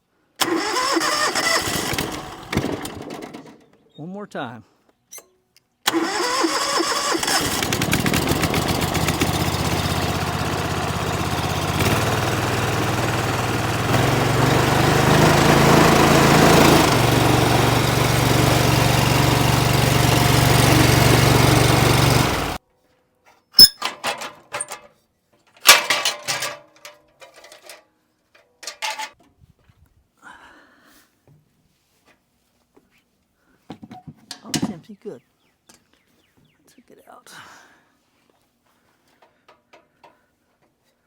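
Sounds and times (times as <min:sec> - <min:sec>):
pressure washer engine running: 0:07.2 - 0:22.6.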